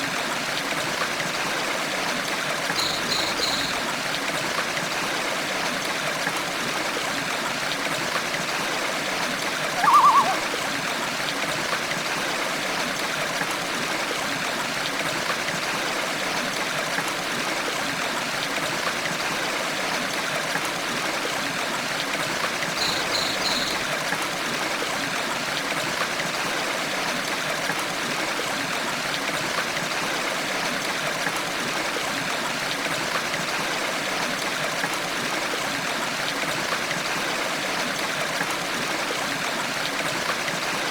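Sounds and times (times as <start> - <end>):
stream babbling: 0.1 - 15.0, 18.2 - 25.7
quick high chirps: 2.8 - 3.8, 9.8 - 10.6
short bird call: 9.7 - 10.7.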